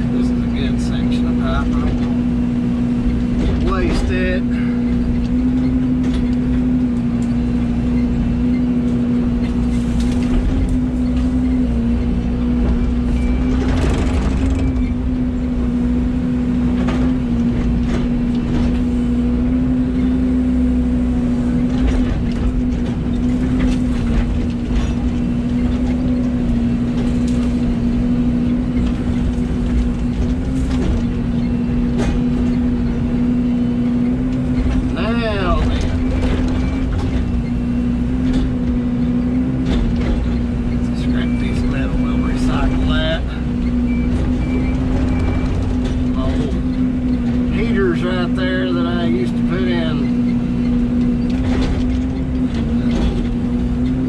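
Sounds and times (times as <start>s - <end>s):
excavator engine running: 0.0s - 54.0s
metal junk knocking and clanking: 12.4s - 15.4s, 21.6s - 33.3s, 33.9s - 47.7s, 50.2s - 54.0s.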